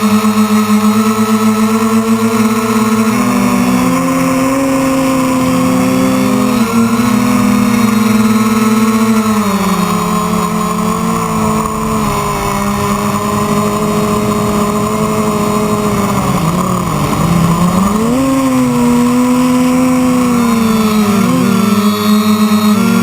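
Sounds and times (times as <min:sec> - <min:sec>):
drone propellers humming: 0:00.0 - 0:23.0.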